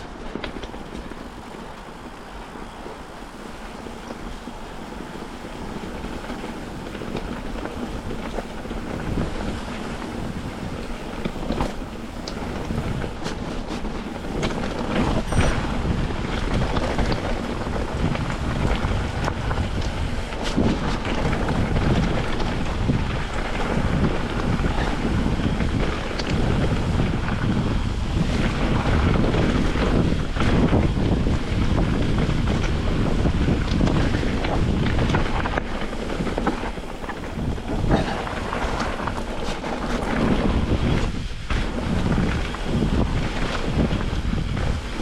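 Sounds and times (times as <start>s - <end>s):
bike rattling and knocking: 0.0s - 45.0s
tyres rolling on dirt: 0.0s - 45.0s
wind rushing over microphone: 0.0s - 45.0s.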